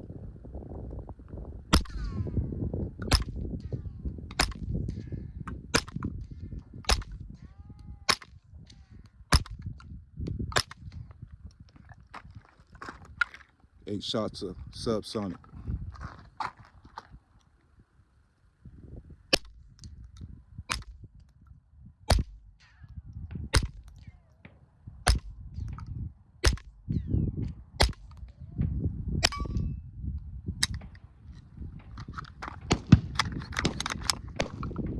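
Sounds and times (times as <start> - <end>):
suppressed pistol shots: 1.7 - 2.2, 3.0 - 3.4, 4.3 - 4.8, 5.5 - 6.2, 6.8 - 7.4, 9.3 - 9.7, 19.3 - 19.7, 22.1 - 22.5, 23.6 - 24.0, 25.1 - 25.3, 26.4 - 26.8, 29.2 - 29.7, 31.9 - 34.8.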